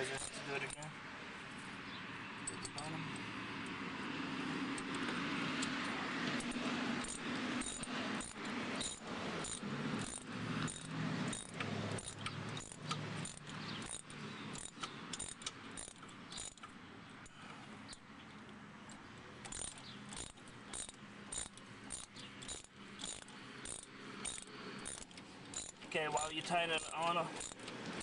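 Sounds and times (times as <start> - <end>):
wrench scraping: 0.0 - 0.9, 4.7 - 18.1, 18.8 - 28.0
sharp metallic wrench clicks: 6.4 - 18.0, 18.9 - 28.0.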